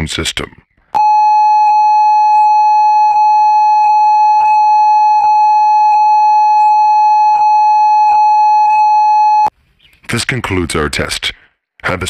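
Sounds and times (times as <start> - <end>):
long steady alert beep: 1.0 - 9.5.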